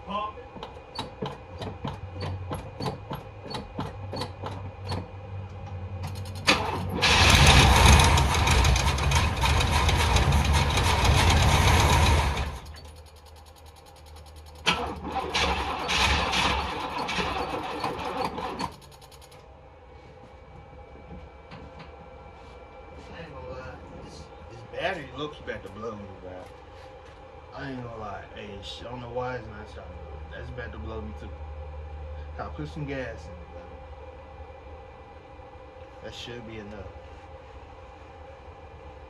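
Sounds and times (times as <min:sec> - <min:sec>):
engine cranking on starter: 0:06.1 - 0:13.0, 0:14.5 - 0:19.3
regular clicks: 0:12.6 - 0:14.7, 0:18.6 - 0:19.4.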